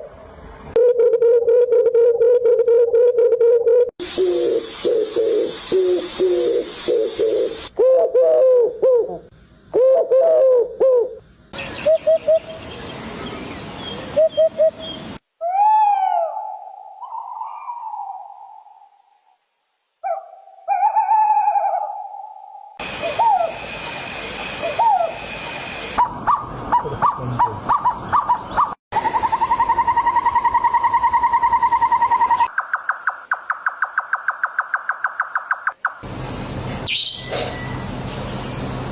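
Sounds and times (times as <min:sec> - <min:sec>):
steady hiss: 0:04.0 - 0:07.7, 0:22.8 - 0:26.0
bird calls: 0:11.0 - 0:18.7, 0:22.8 - 0:36.0, 0:36.8 - 0:38.8.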